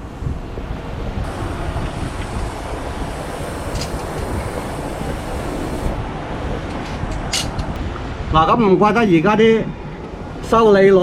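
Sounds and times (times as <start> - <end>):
air conditioner unit running: 0.0 - 6.0.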